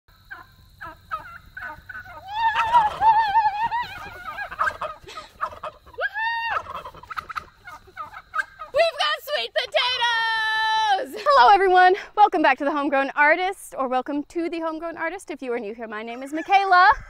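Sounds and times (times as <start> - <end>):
turkey gobbling: 0.2 - 8.8.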